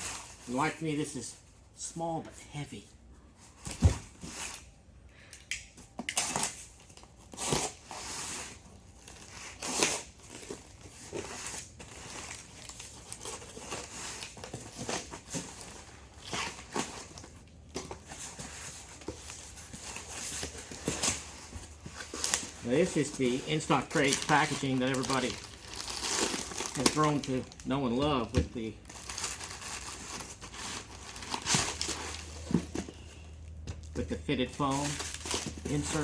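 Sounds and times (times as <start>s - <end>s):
cardboard and packing crinkling: 0.0s - 1.6s, 2.6s - 4.8s, 5.9s - 36.0s
packing tape tearing: 5.6s - 27.6s, 28.8s - 33.0s, 34.6s - 36.0s.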